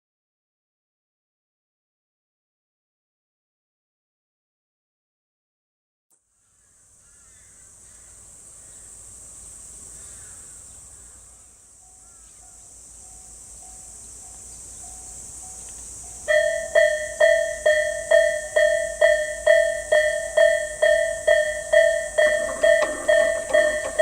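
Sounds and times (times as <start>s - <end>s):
insect buzz: 6.3s - 24.0s
level crossing warning bell: 11.8s - 24.0s
bird chirps: 16.3s - 24.0s.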